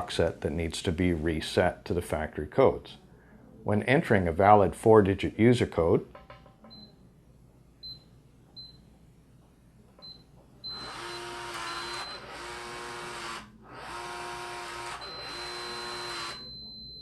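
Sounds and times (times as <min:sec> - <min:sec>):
short keypad beeps: 0:15.0 - 0:17.0.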